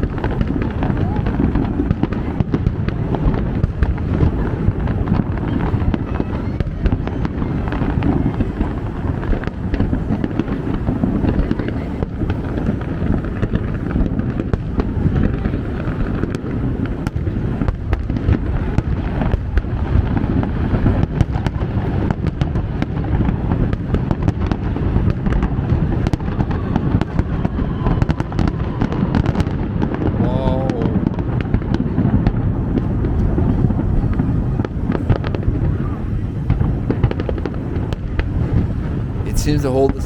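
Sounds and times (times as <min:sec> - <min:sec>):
fireworks bursts rumbling: 0:00.0 - 0:40.0
fireworks crackling: 0:00.0 - 0:40.0.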